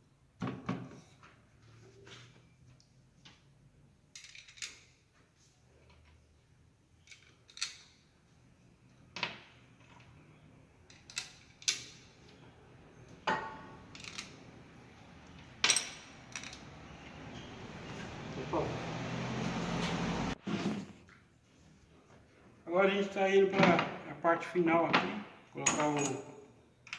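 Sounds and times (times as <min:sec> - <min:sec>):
metal tools clinking on workbench: 0:15.6 - 0:16.7, 0:25.6 - 0:26.9.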